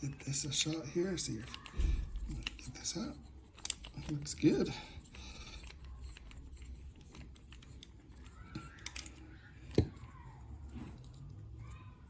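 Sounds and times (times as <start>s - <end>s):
metallic clicks and scrapes of lock: 1.4s - 10.1s.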